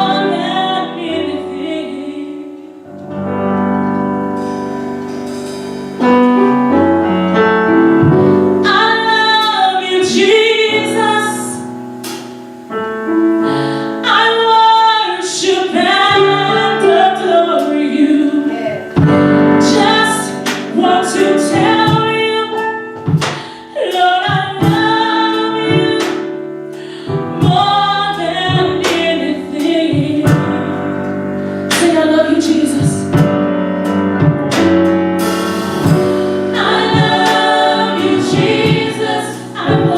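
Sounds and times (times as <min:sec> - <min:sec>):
woman singing gospel: 0:00.0 - 0:02.8, 0:08.6 - 0:11.8, 0:14.0 - 0:33.3, 0:36.4 - 0:39.9
piano chords: 0:00.0 - 0:39.9.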